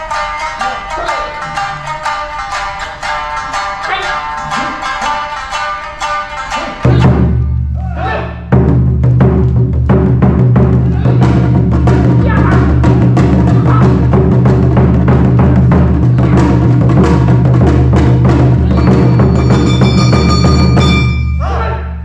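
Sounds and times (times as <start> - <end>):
taiko drums beating fast rhythm: 0.0 - 7.8, 8.4 - 21.4
traditional instruments playing: 0.0 - 22.0.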